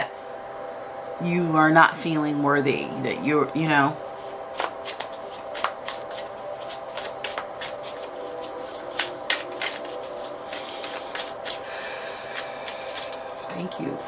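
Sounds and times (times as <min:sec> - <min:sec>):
cards being shuffled: 0:04.2 - 0:13.5.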